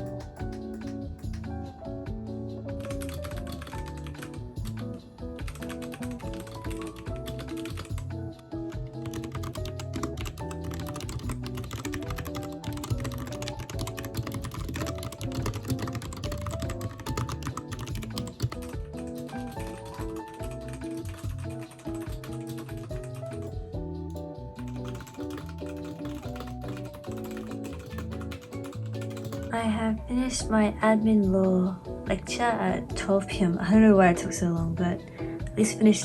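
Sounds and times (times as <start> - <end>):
rapid typing on keyboard: 0.0 - 1.7, 2.7 - 8.1, 8.7 - 23.7, 24.6 - 29.6
background music: 0.0 - 36.0.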